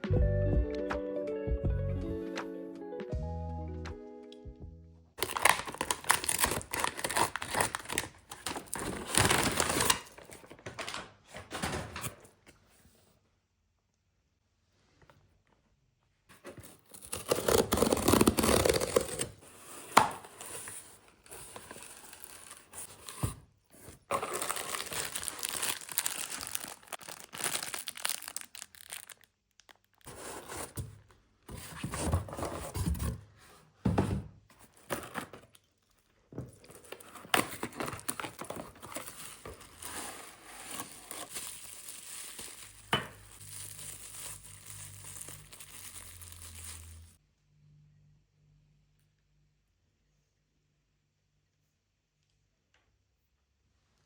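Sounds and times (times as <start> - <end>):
packaging rustling and tearing: 5.2 - 11.0, 16.3 - 30.9, 34.6 - 35.6, 36.5 - 47.2.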